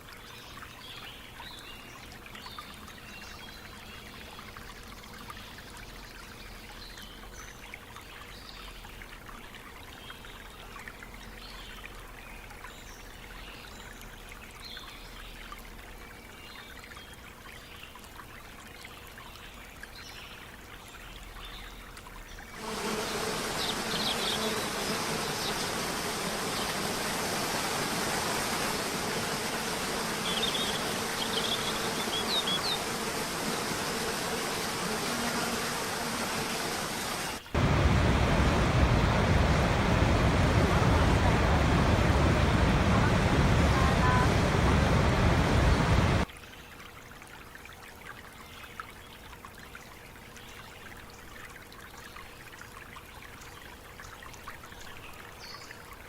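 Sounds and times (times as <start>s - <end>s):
running water rushing: 0.0s - 9.8s, 20.4s - 46.3s
waterfall rushing: 23.4s - 46.3s.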